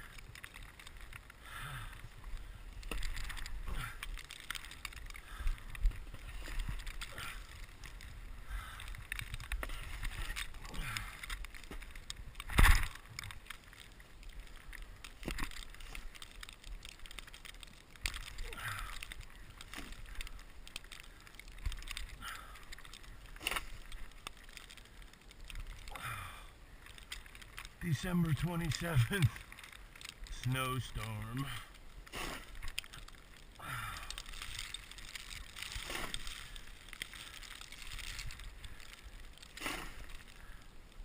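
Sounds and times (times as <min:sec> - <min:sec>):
snow shovel scraping and crunching: 0:32.1 - 0:32.6, 0:35.7 - 0:36.6, 0:39.5 - 0:40.2.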